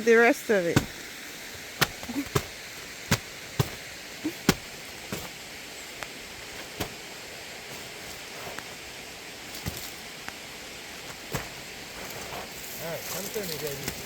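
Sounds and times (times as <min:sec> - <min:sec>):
steady hiss: 0:00.0 - 0:14.0
boots crunching on icy snow: 0:00.5 - 0:08.8.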